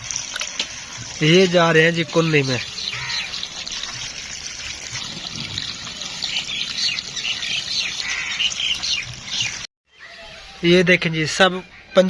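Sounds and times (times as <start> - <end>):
water trickling and splashing: 0.0 - 9.7
small birds chirping: 2.3 - 9.7.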